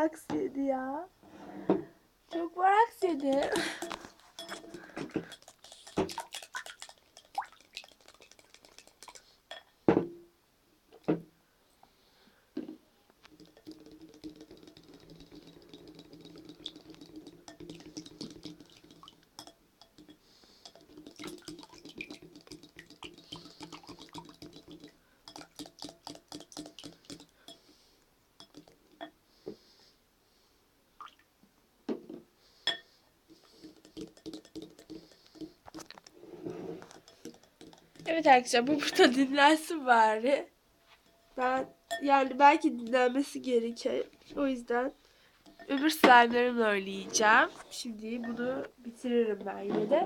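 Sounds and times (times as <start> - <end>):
spoon knocking against bowl: 3.0 - 6.2
slime squelching: 20.9 - 27.3.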